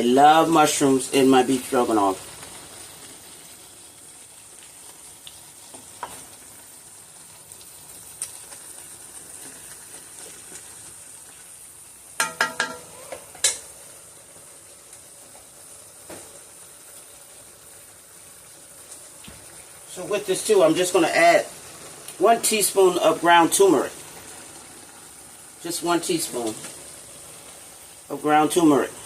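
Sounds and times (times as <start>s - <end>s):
meat sizzling in a pan: 0.0s - 29.0s
utensil clattering against pan: 12.2s - 13.6s.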